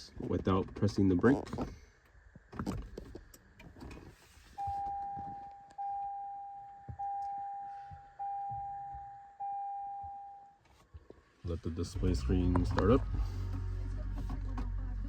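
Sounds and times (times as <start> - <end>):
dashboard warning chime: 4.6 - 10.6.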